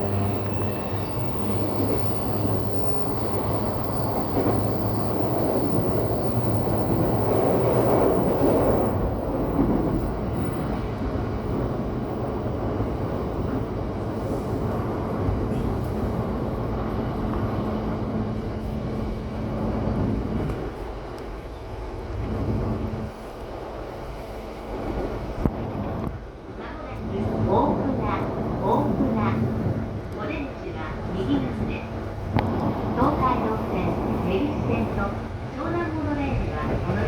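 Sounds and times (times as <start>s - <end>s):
electric train rumbling: 0.0s - 37.0s.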